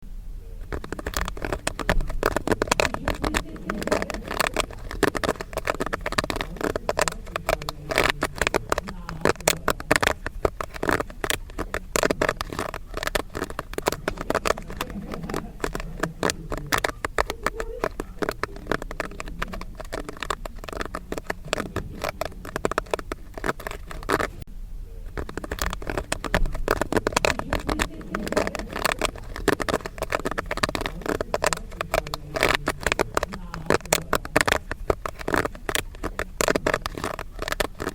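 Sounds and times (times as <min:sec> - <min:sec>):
popcorn popping: 0:00.5 - 0:37.9.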